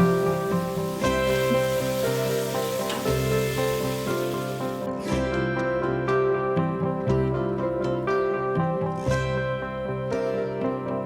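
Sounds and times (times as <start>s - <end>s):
food sizzling in a pan: 0.0s - 4.9s
guitar music: 0.0s - 11.0s.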